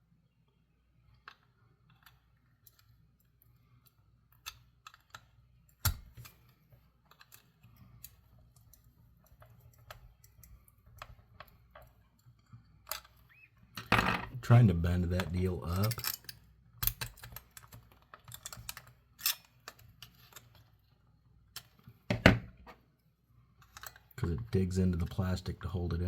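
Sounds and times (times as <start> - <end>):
nippers clicking on metal terminals: 15.2 - 20.6.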